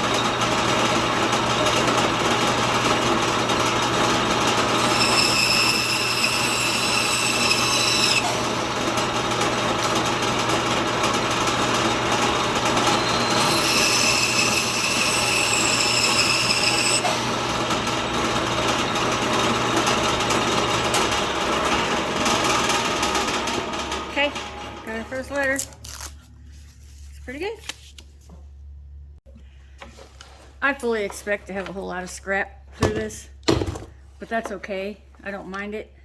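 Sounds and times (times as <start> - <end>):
band saw cutting wood: 0.0 - 26.1
high-pitched saw whining: 4.6 - 9.1, 12.3 - 21.0.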